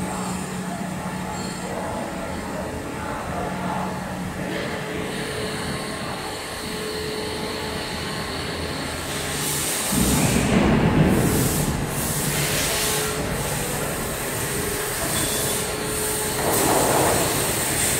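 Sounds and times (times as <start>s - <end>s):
machining equipment running: 4.9s - 17.9s
loud rushing noise: 9.4s - 17.9s.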